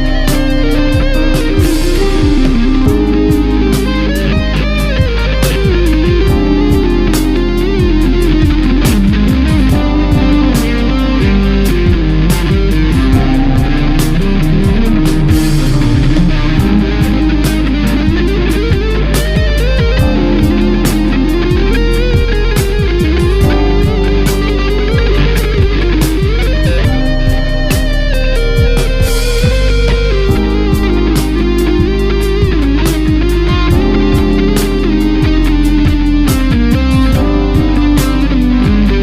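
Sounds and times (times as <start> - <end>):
electric guitar: 0.0 - 39.0
steady beat: 0.0 - 39.0.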